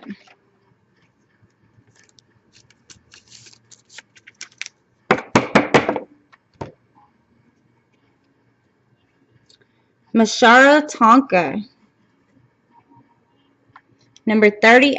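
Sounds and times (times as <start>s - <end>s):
trading cards rustling: 1.9s - 4.7s.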